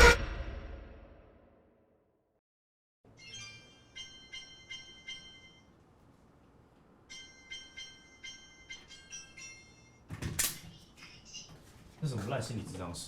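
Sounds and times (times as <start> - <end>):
bell-like chiming melody: 3.1 - 5.8, 7.1 - 10.1.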